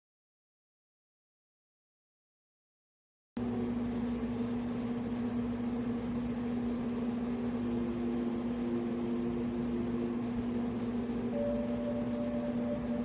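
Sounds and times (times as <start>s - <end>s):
fan hiss: 3.4s - 13.0s
humidifier humming: 3.4s - 13.0s.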